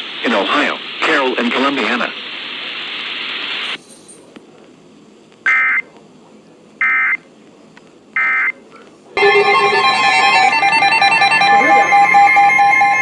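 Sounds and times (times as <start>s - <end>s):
digital data tone bursts: 9.2s - 13.0s
loud steady multi-tone alarm: 9.2s - 13.0s.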